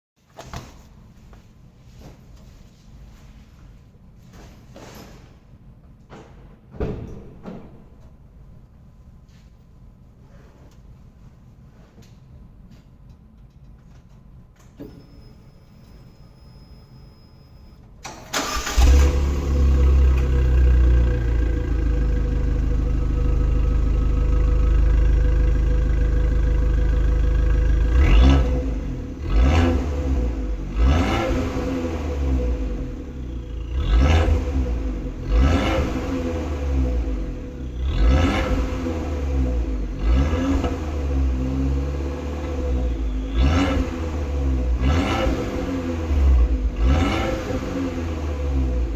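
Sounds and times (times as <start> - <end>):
car engine starting and idling: 18.0 - 48.9
engine revving in short blips: 18.1 - 21.6.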